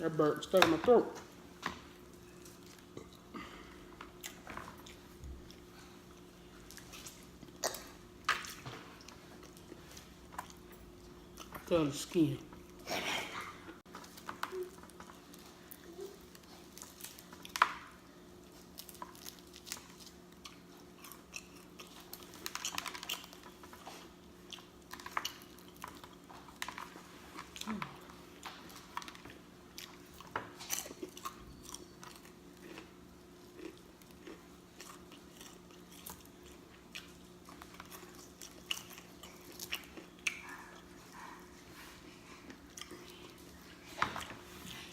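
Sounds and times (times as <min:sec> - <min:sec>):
faint hum: 0:00.0 - 0:44.9
chewing and lip smacking: 0:18.6 - 0:27.8, 0:28.7 - 0:41.7.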